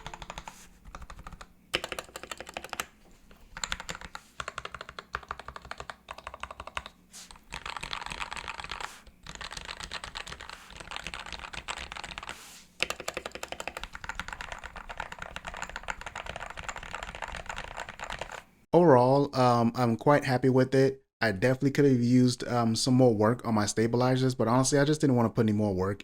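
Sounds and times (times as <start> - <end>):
mechanical keyboard typing: 0.0 - 18.5.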